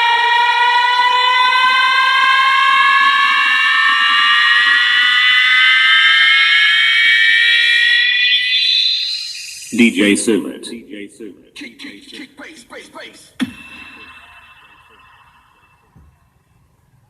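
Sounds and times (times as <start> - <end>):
synthesizer tone rising in pitch: 0.0 - 9.8, 13.4 - 16.3.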